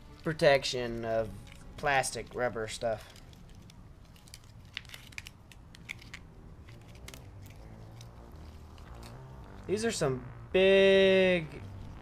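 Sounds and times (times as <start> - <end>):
plastic wrapping crackling: 0.1 - 9.7
low hum: 3.0 - 12.0.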